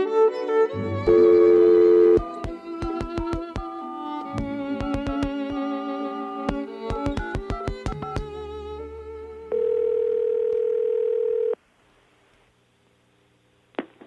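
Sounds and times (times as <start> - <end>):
music bed with sharp ticks: 0.4 - 9.5
telephone ringback tone: 1.0 - 2.4, 9.5 - 11.6.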